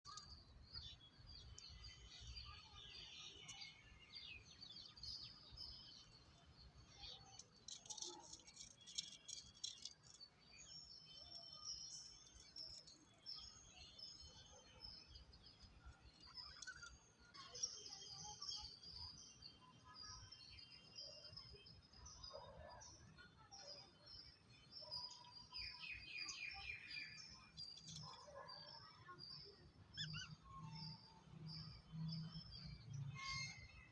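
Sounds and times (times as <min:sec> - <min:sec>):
lovebirds chirping: 0:25.6 - 0:33.9.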